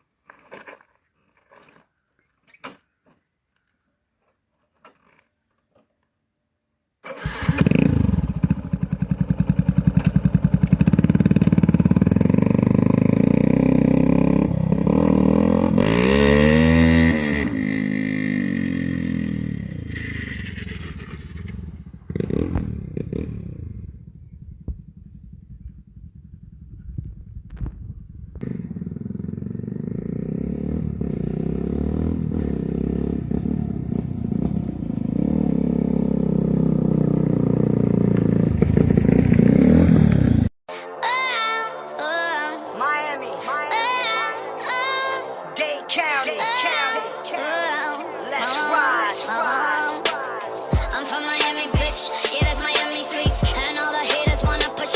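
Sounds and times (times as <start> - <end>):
motorcycle engine revving: 7.1 - 40.5.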